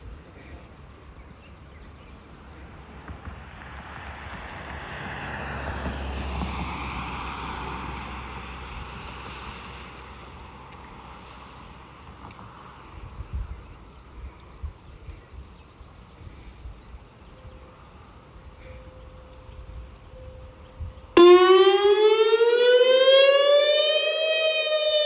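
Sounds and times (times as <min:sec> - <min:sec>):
vehicle passing: 0:02.3 - 0:13.0, 0:19.8 - 0:25.0
wind gusting on microphone: 0:02.7 - 0:25.0.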